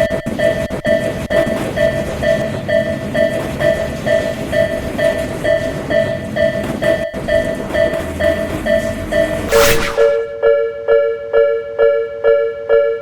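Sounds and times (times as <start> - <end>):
passing train rumble: 0.4 - 10.2.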